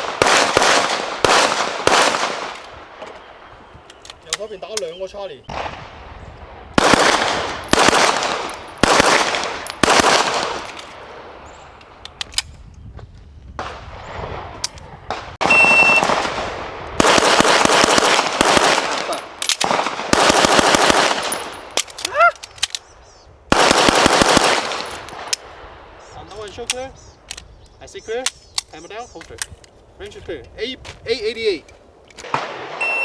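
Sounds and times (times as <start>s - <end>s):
pistol gunshots: 0.0s - 2.6s, 6.8s - 10.7s, 15.1s - 21.7s, 23.5s - 25.3s
shot timer beep: 15.5s - 16.0s, 32.8s - 33.0s.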